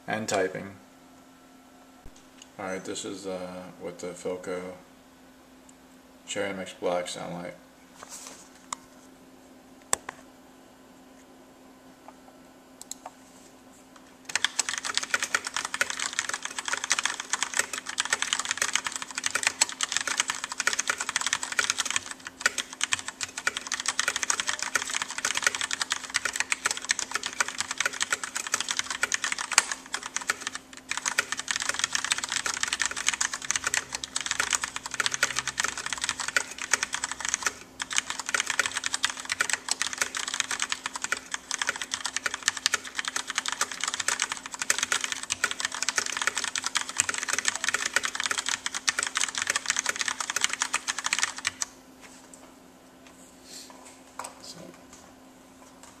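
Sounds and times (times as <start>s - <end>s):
mechanical keyboard typing: 14.3s - 51.7s.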